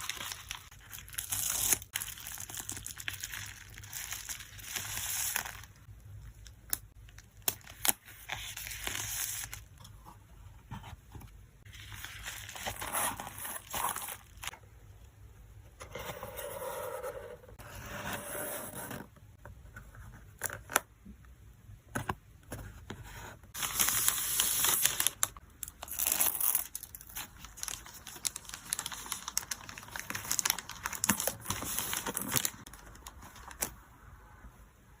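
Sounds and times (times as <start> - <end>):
plastic and paper crinkling: 0.0 - 5.8, 23.5 - 33.7.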